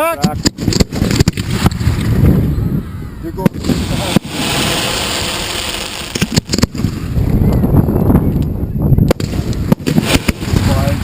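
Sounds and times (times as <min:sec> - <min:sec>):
fireworks bangs: 0:00.2 - 0:02.4, 0:03.4 - 0:07.8, 0:09.0 - 0:11.0
fireworks hissing: 0:03.4 - 0:07.3, 0:09.1 - 0:11.0.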